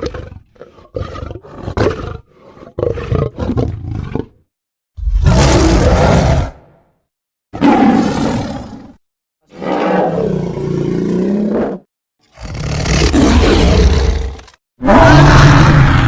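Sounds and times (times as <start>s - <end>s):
creature roar: 5.0s - 6.7s, 9.5s - 16.0s
creature growls: 9.5s - 16.0s.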